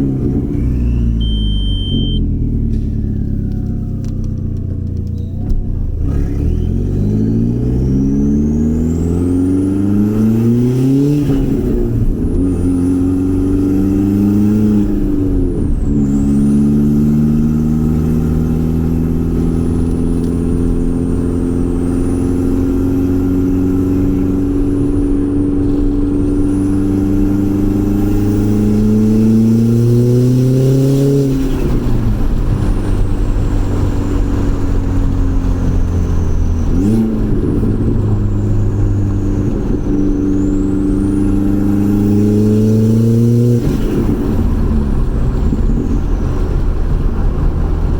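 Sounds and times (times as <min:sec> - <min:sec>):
car engine accelerating hard: 0:00.0 - 0:47.9
turbo whistle: 0:00.6 - 0:02.4.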